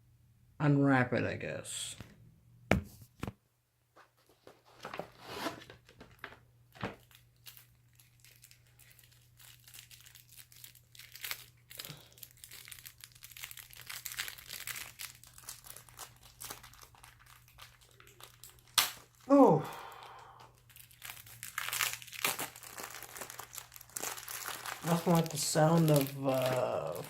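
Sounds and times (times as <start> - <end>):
plastic wrapping crinkling: 6.0 - 27.0.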